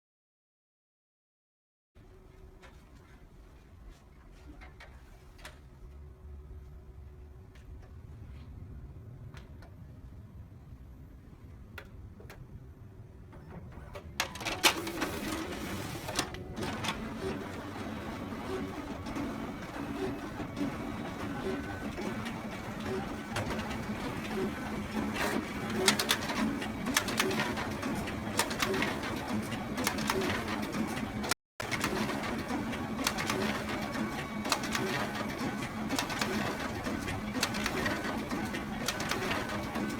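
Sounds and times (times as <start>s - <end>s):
photocopier pulsing whirr: 13.3s - 39.9s.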